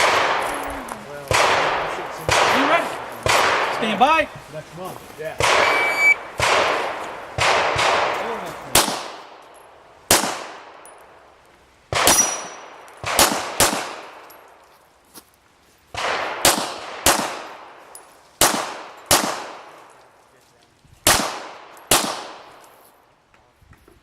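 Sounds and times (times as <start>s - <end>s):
pistol shots with echo: 0.0s - 4.0s, 5.4s - 9.4s, 10.1s - 10.9s, 11.9s - 14.4s, 16.0s - 17.8s, 18.4s - 19.8s, 21.0s - 22.6s.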